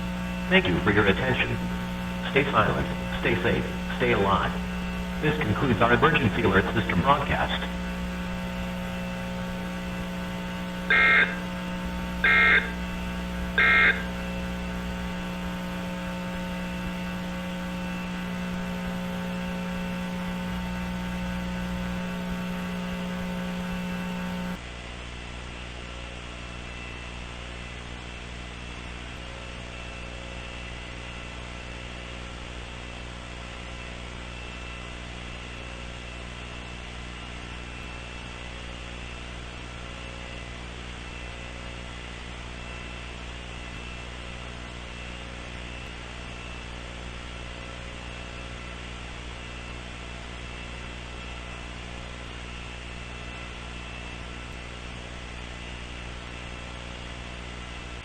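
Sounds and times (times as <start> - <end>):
electrical hum: 0.0 - 24.6.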